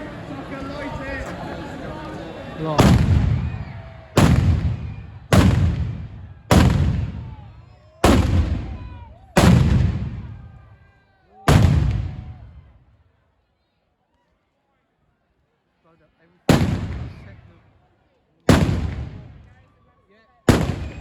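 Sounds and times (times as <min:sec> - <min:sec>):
firework explosions: 0:02.8 - 0:07.4, 0:08.0 - 0:10.4, 0:11.5 - 0:12.4, 0:16.5 - 0:17.3, 0:18.5 - 0:19.4, 0:20.5 - 0:21.0.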